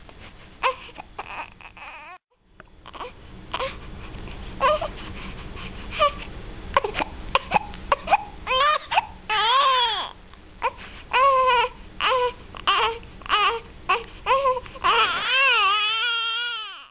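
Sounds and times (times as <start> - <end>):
infant crying: 0.6 - 2.2, 2.9 - 3.8, 4.6 - 5.0, 6.0 - 16.9.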